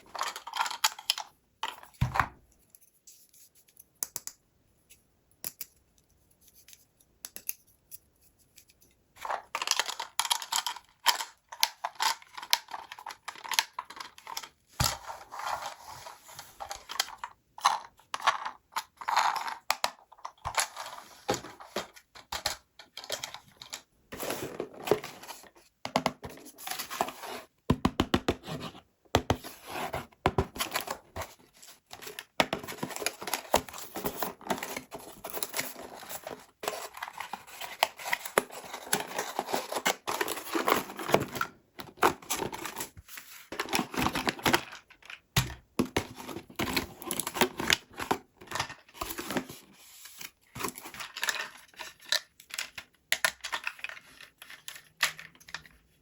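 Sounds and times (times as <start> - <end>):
toy packaging rustling and tearing: 0.0 - 1.3, 9.2 - 22.2, 30.5 - 56.0.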